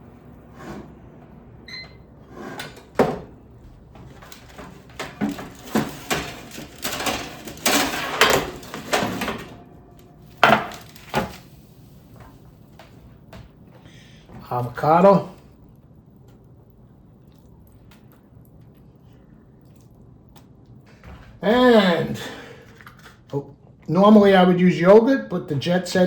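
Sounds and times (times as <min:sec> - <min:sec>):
dishes and pans clattering: 0:04.3 - 0:11.4.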